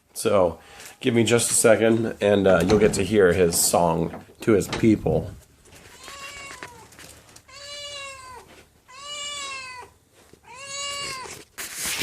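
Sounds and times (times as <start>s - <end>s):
cat meowing: 5.9s - 6.9s, 7.5s - 11.4s.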